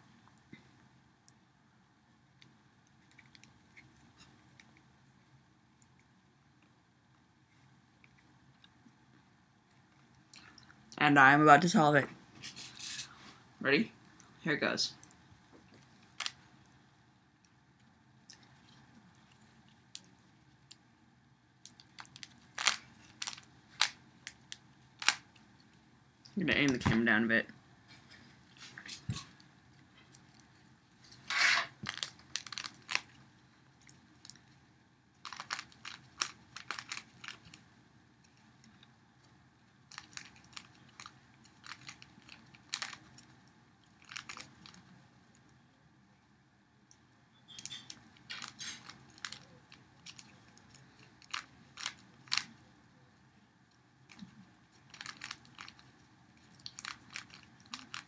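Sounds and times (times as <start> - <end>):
puzzle cube plastic clicks: 21.7 - 24.4, 35.2 - 37.6, 39.9 - 43.1, 47.5 - 52.5, 54.9 - 55.9, 56.5 - 58.0.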